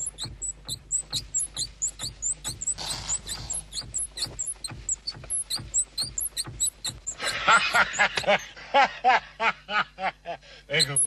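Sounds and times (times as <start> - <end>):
high-pitched squeaks: 0.0 - 8.5, 10.7 - 11.0.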